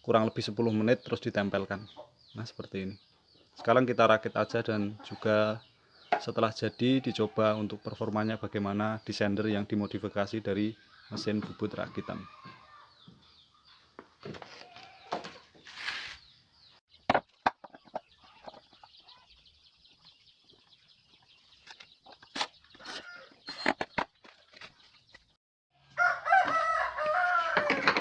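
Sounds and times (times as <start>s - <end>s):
rooster crowing: 25.8s - 28.0s.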